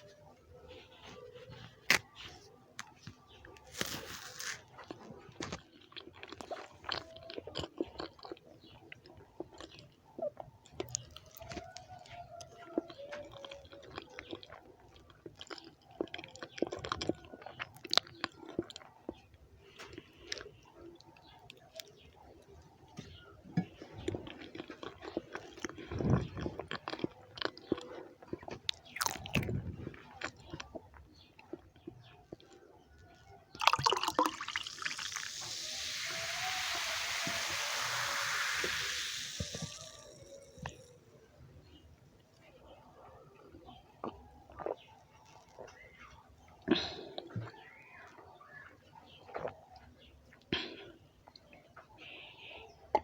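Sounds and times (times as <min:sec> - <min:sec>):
close chewing mouth clicks: 0:04.6 - 0:22.6, 0:23.6 - 0:32.6.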